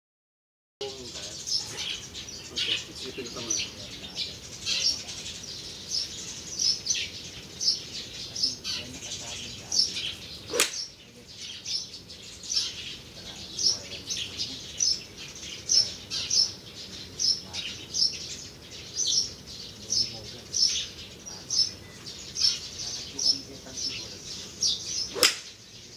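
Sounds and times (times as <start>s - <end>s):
birds chirping: 0.8s - 25.9s
sharp click: 10.5s - 10.8s, 25.2s - 25.5s.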